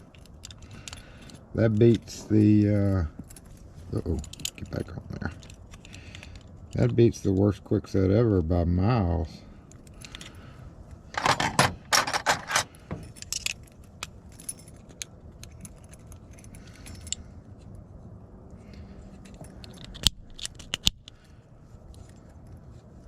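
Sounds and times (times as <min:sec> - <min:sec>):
metal lock parts and keys jangling: 0:00.0 - 0:07.9, 0:09.5 - 0:23.0
sharp lock clicks: 0:19.6 - 0:21.2.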